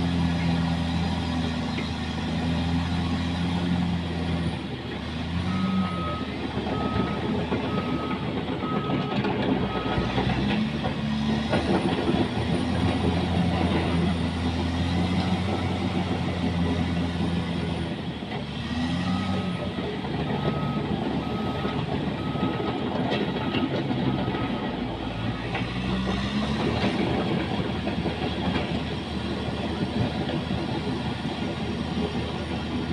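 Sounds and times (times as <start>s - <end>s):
bulldozer diesel engine: 0.0s - 32.9s
reversing alarm beeping: 5.5s - 10.1s, 20.4s - 25.3s.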